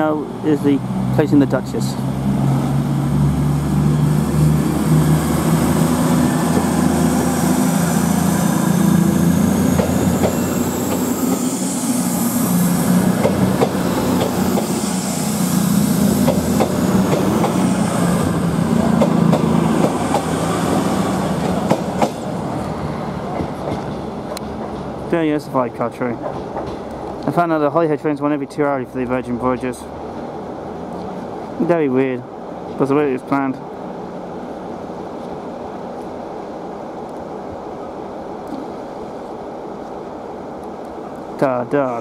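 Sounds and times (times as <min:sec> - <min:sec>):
diesel train engine running: 0:00.0 - 0:42.0.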